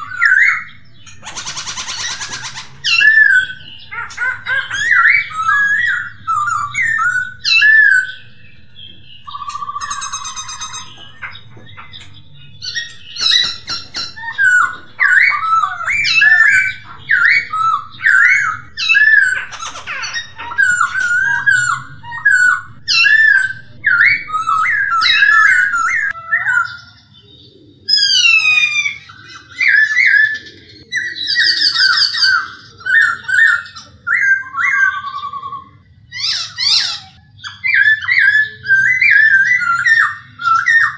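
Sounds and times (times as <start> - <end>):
low hum: 0.0 - 26.2
bird singing whistles and trills: 0.0 - 40.9.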